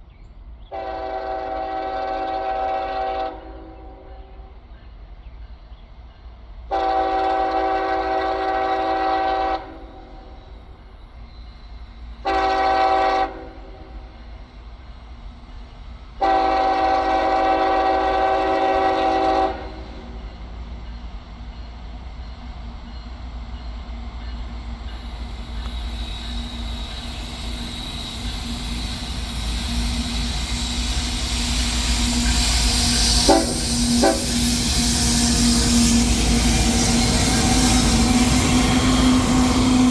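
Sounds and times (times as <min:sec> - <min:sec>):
train rumble: 0:00.0 - 0:39.9
locomotive air horn blasts: 0:00.7 - 0:04.2, 0:06.7 - 0:10.3, 0:12.2 - 0:13.9, 0:16.2 - 0:20.1, 0:32.1 - 0:34.6
train wheel clicks: 0:18.4 - 0:39.9.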